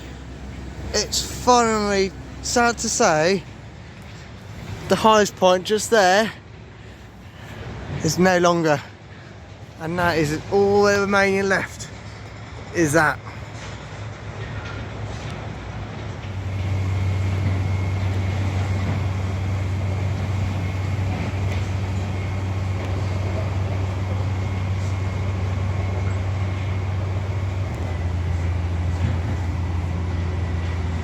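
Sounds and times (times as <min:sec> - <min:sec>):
heavy engine droning: 0:00.0 - 0:31.0
faint high whine: 0:16.4 - 0:31.0.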